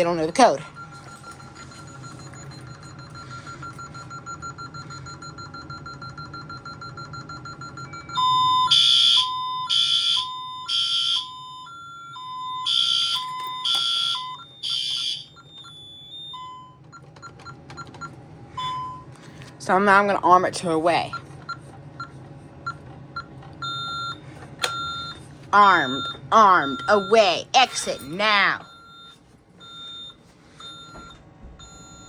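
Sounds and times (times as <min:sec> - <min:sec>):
alarm sounder blasts: 0:08.4 - 0:11.4, 0:12.6 - 0:15.4, 0:24.6 - 0:28.7
keypad beeping: 0:22.7 - 0:32.0.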